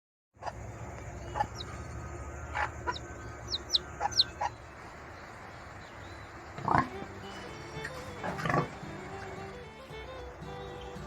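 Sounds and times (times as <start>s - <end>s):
chicken clucking: 0.4s - 4.6s
chick peeping: 0.4s - 8.5s
steady low hum: 0.4s - 11.0s.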